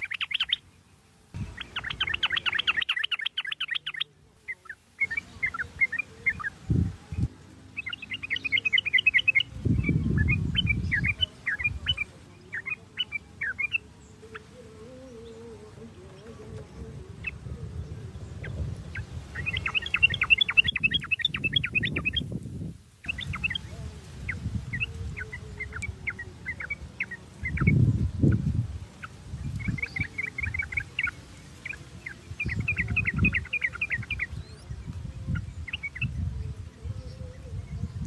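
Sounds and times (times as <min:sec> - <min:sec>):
bird chattering calls: 0:00.0 - 0:00.6, 0:01.4 - 0:06.6, 0:07.8 - 0:14.6, 0:18.9 - 0:22.3, 0:23.0 - 0:28.4, 0:29.0 - 0:34.4.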